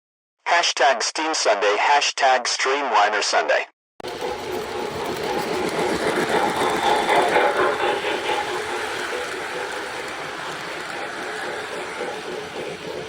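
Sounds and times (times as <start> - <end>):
model train rumbling on track: 4.0 - 13.0.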